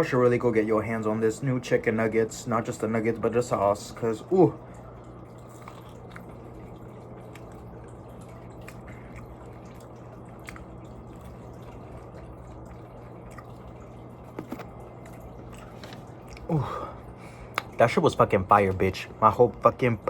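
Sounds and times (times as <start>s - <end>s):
low room hum: 0.0s - 20.0s
wet mouth clicks chewing: 5.4s - 16.5s.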